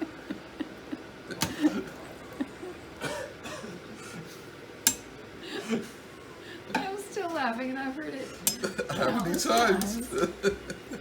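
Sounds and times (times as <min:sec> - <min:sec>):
person chuckling: 0:00.0 - 0:02.8, 0:10.0 - 0:11.0
spoon clinking against pot: 0:08.4 - 0:10.3.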